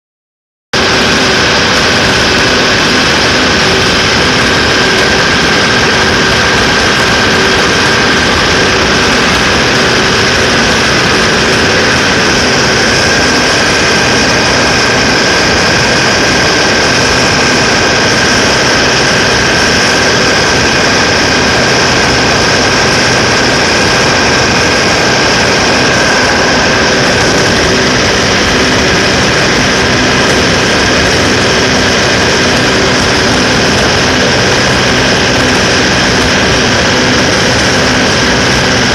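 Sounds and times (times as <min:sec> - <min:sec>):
diesel engine running at high speed: 0:00.7 - 0:38.9
steady high whine: 0:00.7 - 0:38.9.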